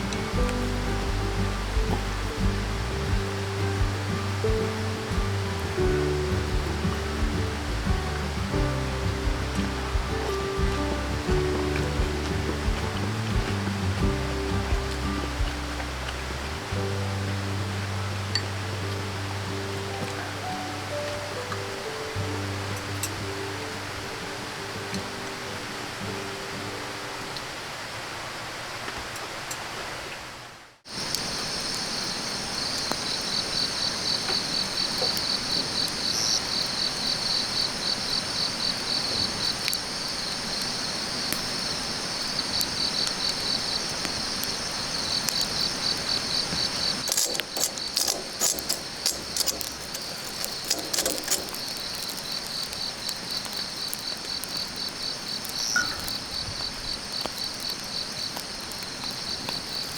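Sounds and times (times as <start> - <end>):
insects chirping: 0.0 - 29.8, 30.8 - 59.9
sharp clicks and crackles: 42.2 - 59.9.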